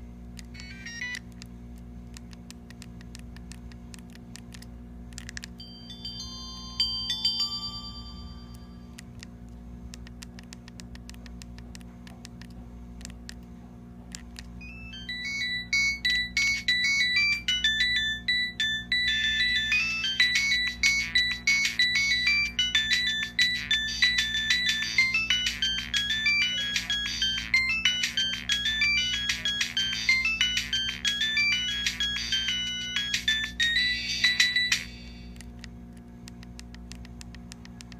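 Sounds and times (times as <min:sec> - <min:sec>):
faint low hum: 0:00.0 - 0:37.9
phone ringtone melody: 0:00.6 - 0:01.2, 0:05.6 - 0:09.0, 0:14.6 - 0:35.4.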